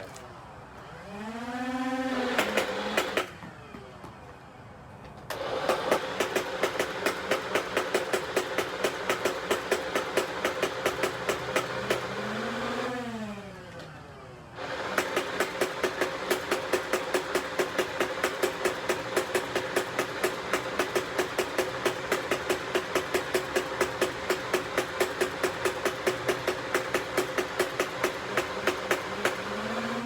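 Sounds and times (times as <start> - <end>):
rising and falling whine: 0.0 - 5.5
toy blaster firing full-auto: 1.9 - 3.6, 5.3 - 13.2, 14.6 - 30.0
flywheel motors humming: 5.3 - 30.0.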